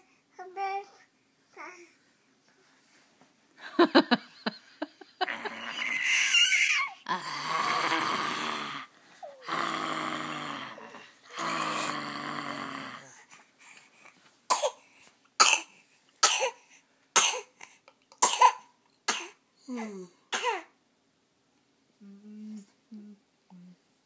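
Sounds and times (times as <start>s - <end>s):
baby growling hoarsely: 5.2s - 13.3s.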